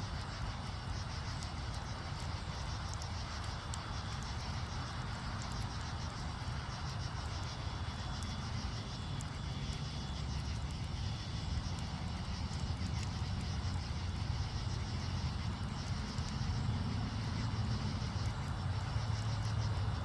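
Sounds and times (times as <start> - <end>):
crickets chirping: 0.0 - 20.0
faint clicks: 0.5 - 5.9.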